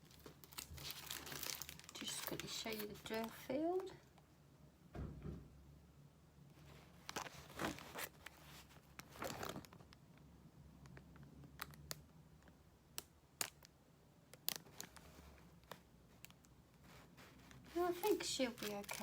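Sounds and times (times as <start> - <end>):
plastic bags crinkling: 0.0 - 4.0, 17.7 - 19.0.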